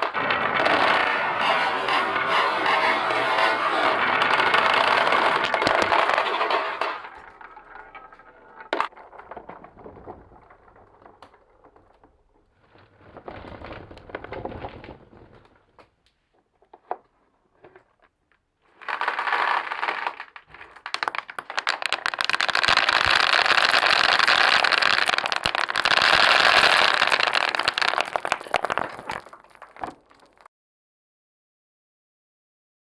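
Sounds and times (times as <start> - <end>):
wooden balls clattering down marble run: 0.0 - 12.6, 18.7 - 30.5.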